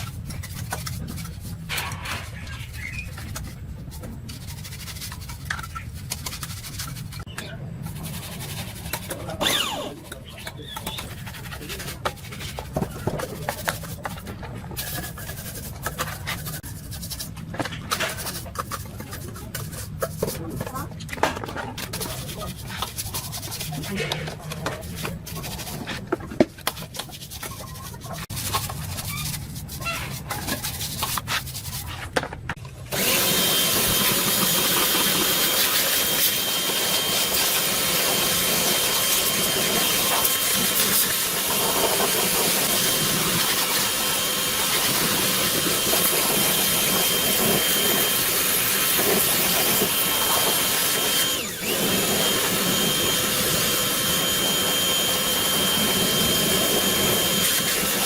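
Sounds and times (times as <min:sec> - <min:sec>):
power tool high whine: 0:09.4 - 0:09.9, 0:32.9 - 0:58.0
small knocks and rubbing: 0:17.2 - 0:32.7.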